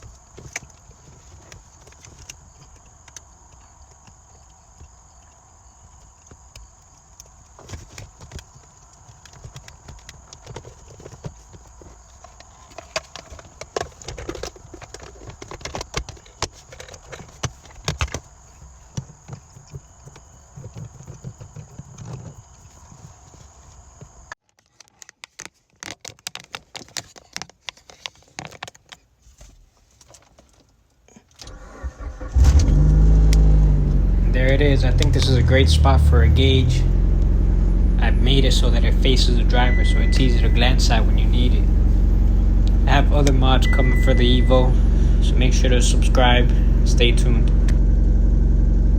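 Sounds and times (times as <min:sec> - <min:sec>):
clicks and knocks of wiring plugs: 0:00.0 - 0:22.7, 0:24.4 - 0:29.0.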